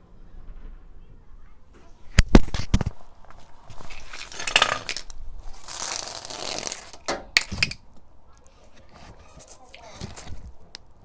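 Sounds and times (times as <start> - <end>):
scraping rasp: 2.1 - 10.8.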